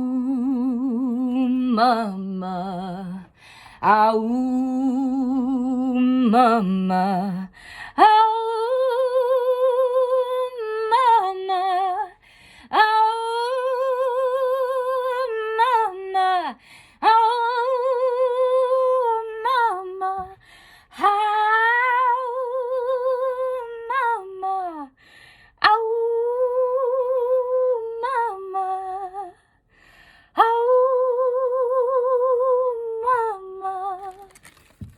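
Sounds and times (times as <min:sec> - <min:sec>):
breaths: 0:03.2 - 0:03.8, 0:07.5 - 0:08.0, 0:12.2 - 0:12.7, 0:16.6 - 0:17.0, 0:20.4 - 0:21.0, 0:24.9 - 0:25.6, 0:29.4 - 0:30.4.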